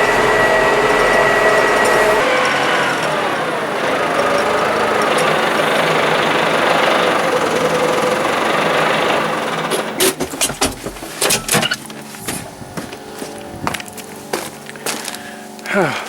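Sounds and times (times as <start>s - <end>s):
tractor engine running: 0.0s - 15.7s.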